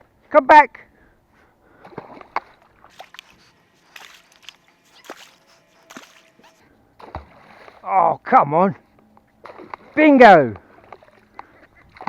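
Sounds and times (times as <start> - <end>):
water splashing and sloshing: 1.7 - 7.9, 9.4 - 12.0.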